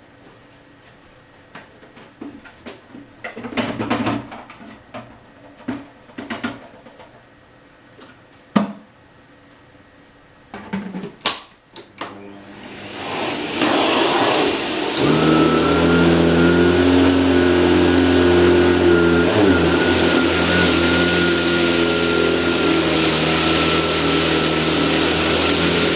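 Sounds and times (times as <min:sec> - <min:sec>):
vacuum motor running: 0:12.1 - 0:25.9.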